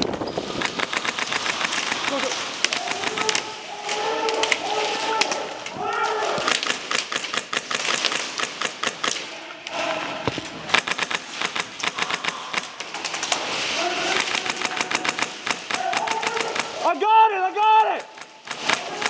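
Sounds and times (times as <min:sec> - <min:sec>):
airsoft guns firing: 0:00.4 - 0:05.5, 0:06.2 - 0:09.4, 0:10.3 - 0:17.1, 0:17.7 - 0:19.0.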